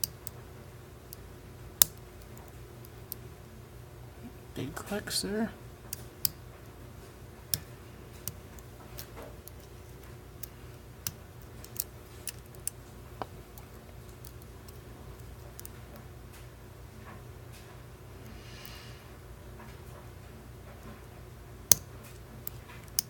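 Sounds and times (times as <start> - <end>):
small metallic lock pick clicks: 10.4 - 12.8.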